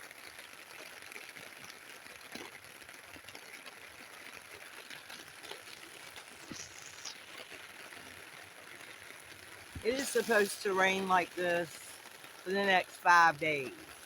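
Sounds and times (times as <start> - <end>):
rain on a tent: 0.0 - 14.0
loud drips: 5.6 - 14.0.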